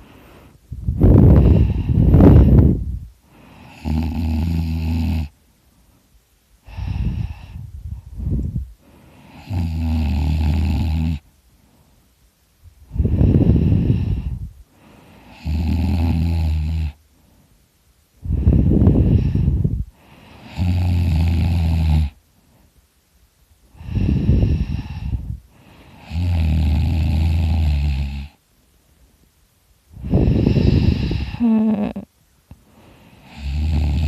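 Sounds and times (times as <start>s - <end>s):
noisy rushing breaths: 0.0s - 3.7s, 5.7s - 9.4s, 12.8s - 15.3s, 17.1s - 20.5s, 23.7s - 26.0s, 29.9s - 31.4s
person snoring: 1.0s - 5.3s, 6.6s - 7.6s, 9.2s - 11.2s, 12.9s - 17.0s, 18.2s - 22.2s, 23.8s - 28.4s, 30.0s - 32.1s, 33.1s - 34.0s.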